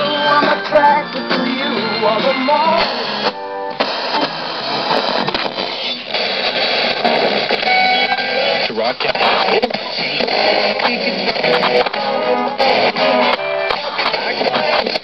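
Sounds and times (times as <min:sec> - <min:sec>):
guitar music from radio speakers: 0:00.0 - 0:15.0.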